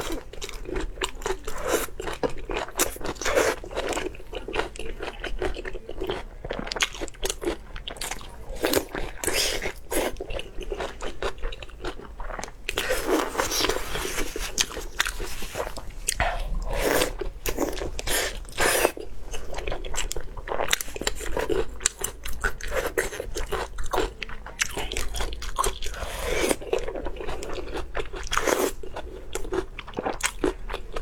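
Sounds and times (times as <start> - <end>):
person biting and chewing food: 7.3 - 23.7.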